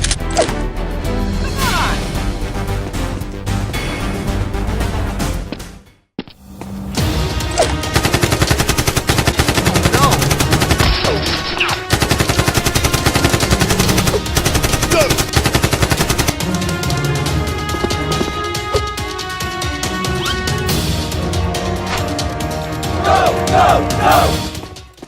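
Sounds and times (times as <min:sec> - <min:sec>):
action background music: 0:00.0 - 0:25.0
automatic gunfire: 0:07.9 - 0:11.0, 0:11.8 - 0:16.4.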